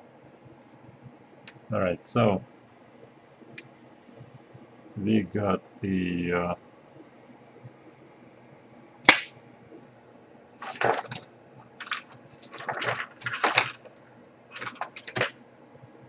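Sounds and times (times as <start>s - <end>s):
crackly rustling of parts and wires: 0.4s - 5.0s, 9.1s - 16.0s
laptop parts clicking: 10.6s - 13.9s, 14.5s - 15.3s.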